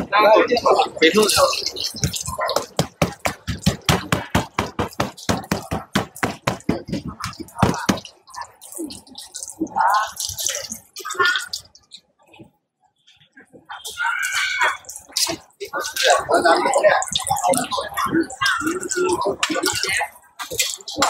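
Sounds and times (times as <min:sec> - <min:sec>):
rapid even tapping: 0:01.6 - 0:08.5
scattered knocks: 0:01.9 - 0:08.1.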